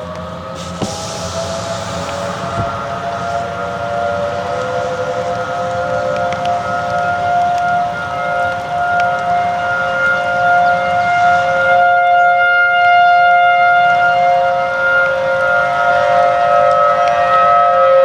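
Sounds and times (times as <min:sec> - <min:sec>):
warning sirens wailing: 0:00.0 - 0:18.0
heavy rain hissing: 0:00.3 - 0:11.7.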